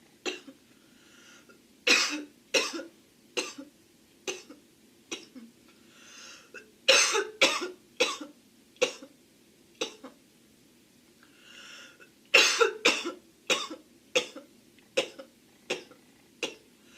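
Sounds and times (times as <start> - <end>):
girl coughing: 1.9 - 3.7, 6.9 - 9.1, 12.4 - 14.4.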